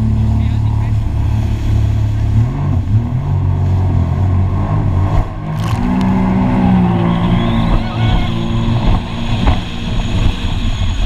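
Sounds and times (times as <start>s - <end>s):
jet ski engine revving: 0.0s - 11.0s.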